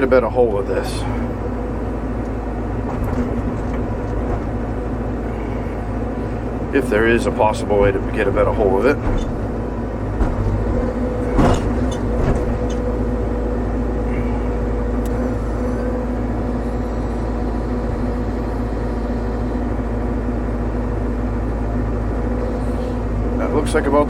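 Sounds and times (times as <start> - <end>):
excavator engine running: 0.0 - 24.0
short knocks: 2.8 - 5.0, 7.6 - 13.0.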